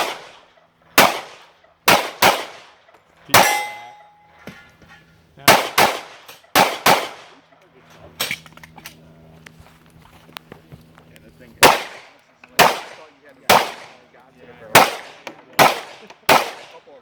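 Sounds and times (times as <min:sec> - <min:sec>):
pistol shots: 0:00.0 - 0:04.1, 0:05.4 - 0:07.4, 0:11.6 - 0:17.0
steel plate ringing: 0:03.3 - 0:04.3.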